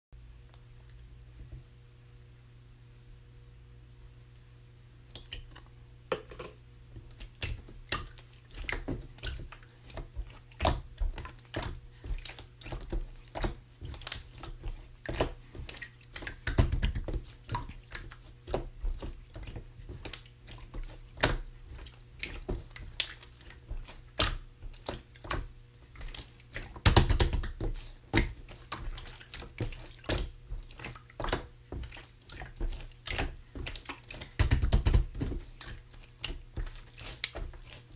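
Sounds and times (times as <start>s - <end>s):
slime squelching: 5.1s - 5.8s, 7.0s - 37.9s.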